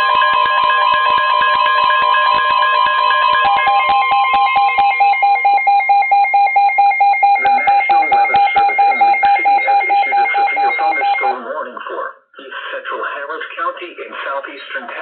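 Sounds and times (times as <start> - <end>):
rapid electronic beeping: 0.0 - 11.4
steady alert tone: 0.0 - 11.4.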